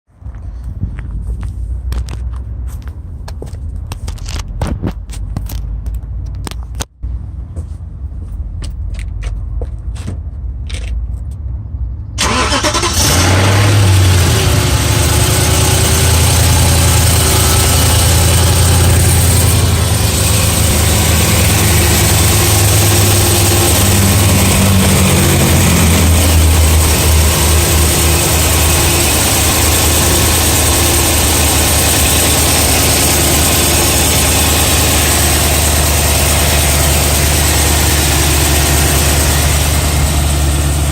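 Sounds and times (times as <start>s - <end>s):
car engine starting and idling: 12.1s - 40.9s.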